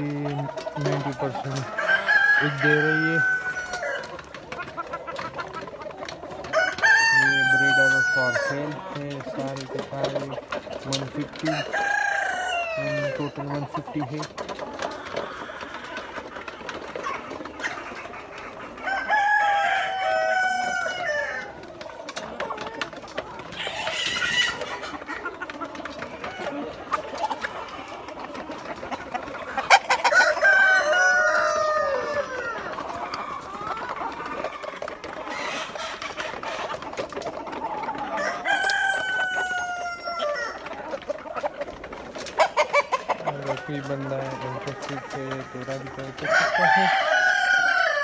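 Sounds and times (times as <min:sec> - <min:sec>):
chickens clucking: 0:00.0 - 0:48.0
rooster crowing: 0:01.7 - 0:04.0, 0:06.5 - 0:08.5, 0:18.8 - 0:21.4, 0:30.0 - 0:32.6, 0:38.2 - 0:40.6, 0:45.1 - 0:48.0.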